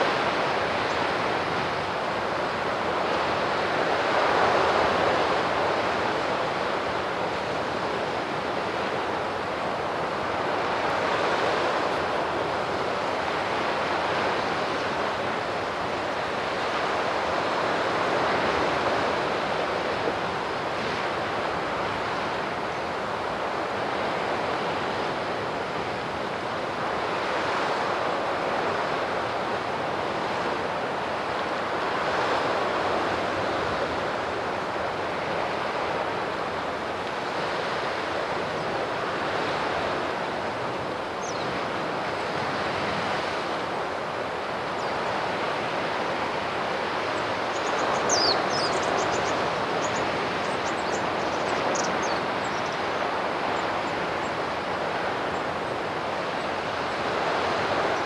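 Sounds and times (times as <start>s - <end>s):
waves washing onto shore: 0.0s - 58.0s.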